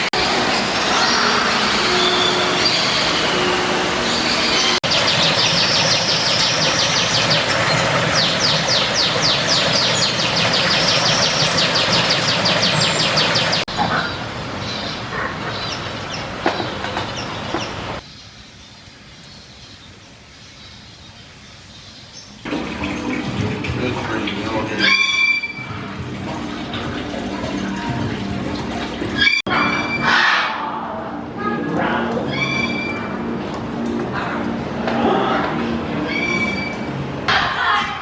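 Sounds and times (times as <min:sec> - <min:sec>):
birds chirping: 0:00.4 - 0:22.5.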